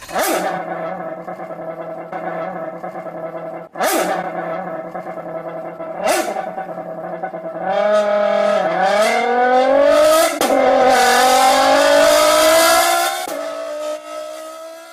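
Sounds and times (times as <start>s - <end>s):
car engine accelerating: 0.0s - 14.9s.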